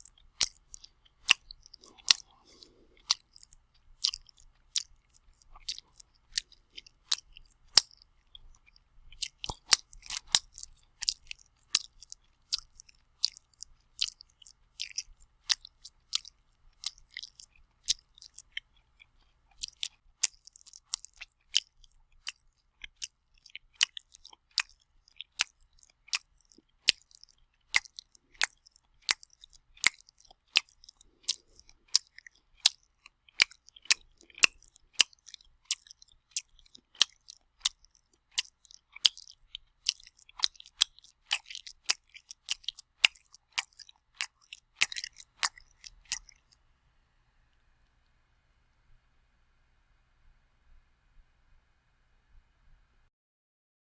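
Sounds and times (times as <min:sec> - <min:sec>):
wet open-mouthed chewing: 0:00.0 - 0:46.6.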